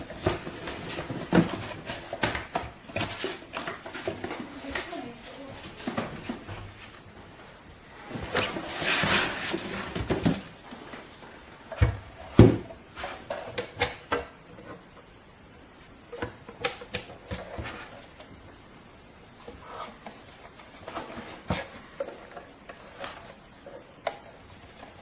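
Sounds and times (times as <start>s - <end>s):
rustling: 0.0s - 13.6s.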